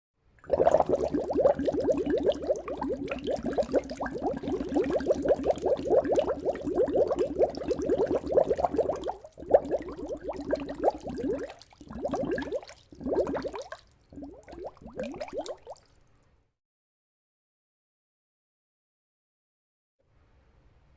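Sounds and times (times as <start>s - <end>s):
liquid pouring and bubbling: 0.4s - 15.8s.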